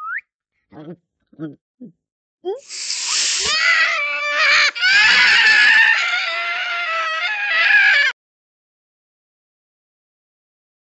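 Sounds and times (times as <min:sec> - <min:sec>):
screaming cry: 0:02.6 - 0:08.2.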